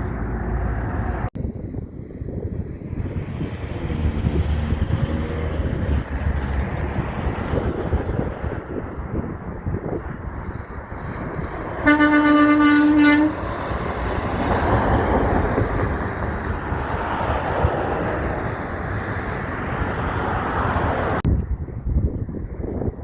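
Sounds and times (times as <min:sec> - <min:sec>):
truck passing: 0:00.0 - 0:21.3
truck horn blast: 0:11.4 - 0:14.2.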